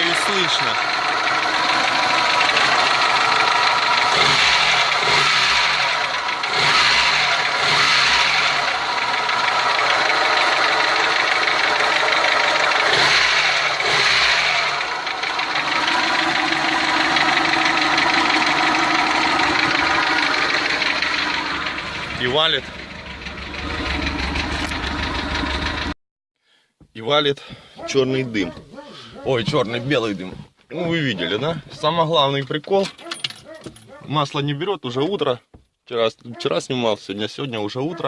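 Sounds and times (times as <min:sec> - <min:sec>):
car engine running with knock: 0:00.1 - 0:26.0, 0:29.4 - 0:31.1.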